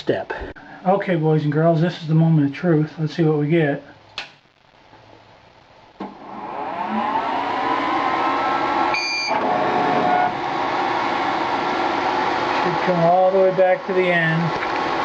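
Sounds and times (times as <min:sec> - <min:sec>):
laser engraver fans and motors whirring: 0:06.7 - 0:15.0
short high beep: 0:09.0 - 0:09.4.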